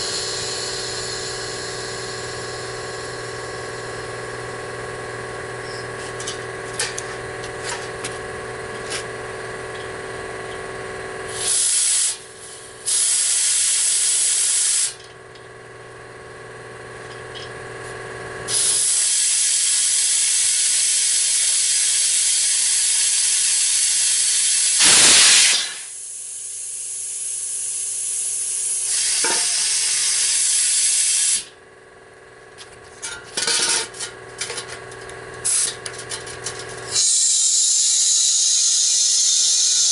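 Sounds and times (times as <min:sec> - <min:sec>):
machine humming: 0:00.0 - 0:13.3
compressed air hissing: 0:11.3 - 0:15.0, 0:18.5 - 0:31.5, 0:36.9 - 0:39.9
sharp air blast: 0:11.3 - 0:15.0, 0:24.7 - 0:27.9, 0:36.9 - 0:38.5.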